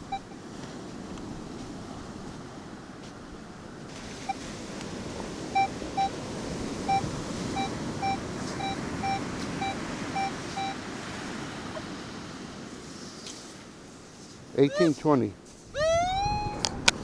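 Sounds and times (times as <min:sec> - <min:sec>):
metal detector beeps: 0:00.0 - 0:00.4, 0:04.2 - 0:04.5, 0:05.5 - 0:10.9, 0:14.7 - 0:15.2, 0:15.8 - 0:16.9
wind hiss: 0:00.0 - 0:17.0
surf: 0:00.1 - 0:17.0.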